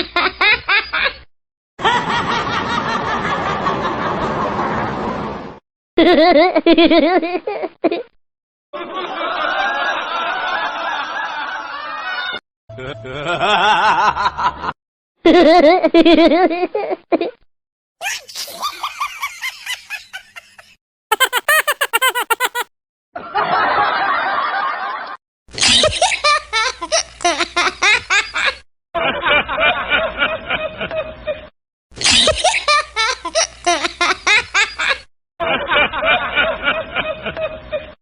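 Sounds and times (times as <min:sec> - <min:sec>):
giggling and snickering laughs: 0:18.1 - 0:22.7.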